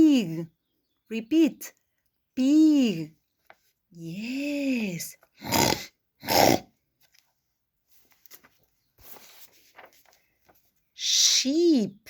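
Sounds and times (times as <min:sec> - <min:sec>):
faint small noises: 0:01.7 - 0:11.0
person imitating pig snorts: 0:05.4 - 0:06.7.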